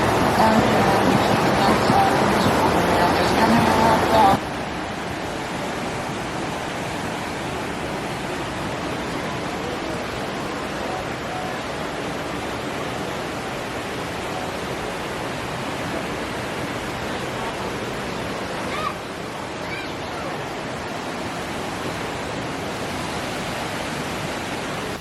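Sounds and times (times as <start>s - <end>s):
waterfall rushing: 0.0s - 25.0s.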